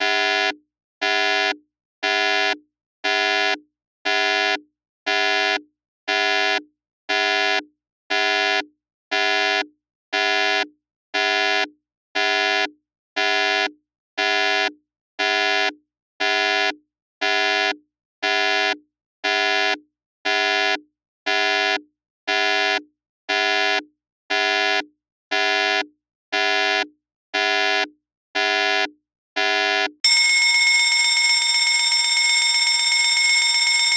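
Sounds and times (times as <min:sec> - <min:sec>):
electronic alarm buzzer beeping: 0:30.1 - 0:33.9.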